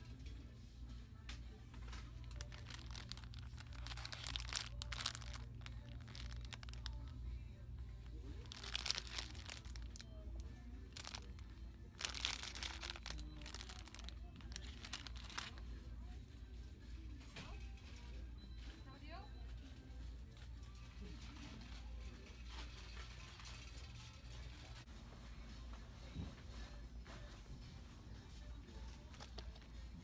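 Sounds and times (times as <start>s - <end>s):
faint background music: 0.0s - 30.0s
rustling and crinkling: 1.6s - 7.2s, 8.1s - 10.2s, 10.8s - 15.7s, 20.4s - 30.0s.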